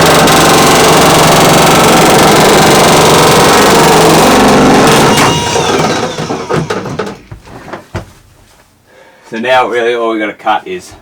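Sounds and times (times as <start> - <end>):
power tool cutting sheet metal: 0.0 - 7.1.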